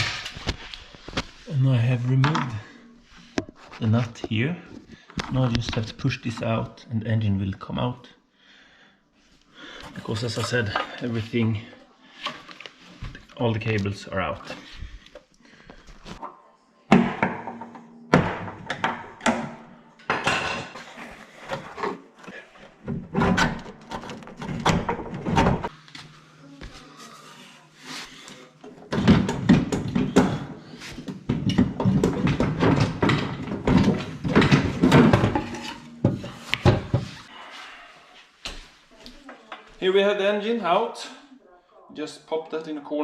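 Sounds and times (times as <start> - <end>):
metal knocks clanks and scrapes: 31.1 - 37.2.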